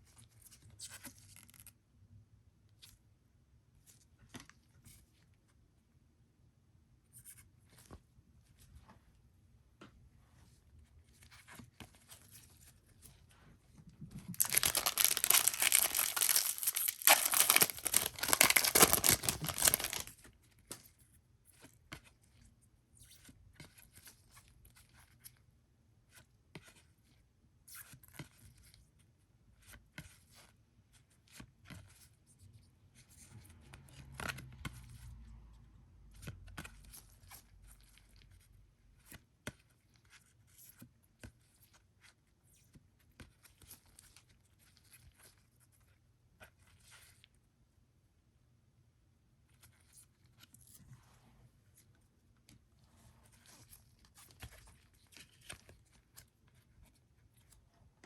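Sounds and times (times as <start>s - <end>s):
cards rustling and clicking: 14.2s - 20.8s
card pack wrapper ripping: 14.3s - 20.1s.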